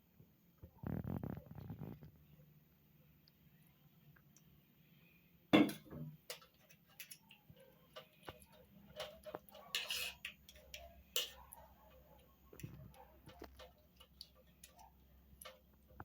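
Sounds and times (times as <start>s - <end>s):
kitchen utensils and dishes clicking: 5.6s - 15.7s.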